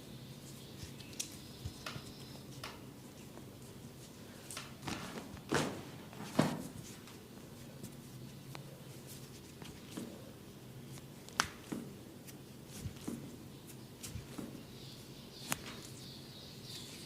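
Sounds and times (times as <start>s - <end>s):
hands slapping and cracking: 10.9s - 14.5s, 15.4s - 15.9s.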